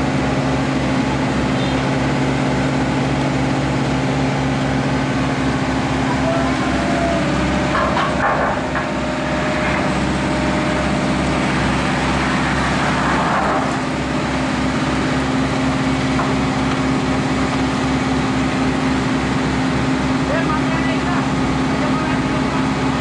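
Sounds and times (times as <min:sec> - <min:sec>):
engine running steadily: 0:00.0 - 0:23.0.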